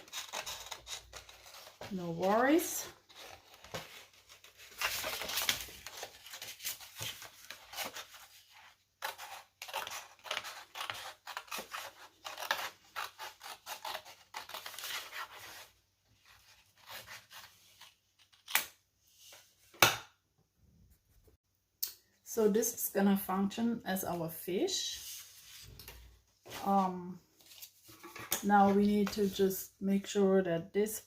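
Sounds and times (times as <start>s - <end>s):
scissors snipping paper: 0.0s - 4.0s, 9.0s - 15.6s.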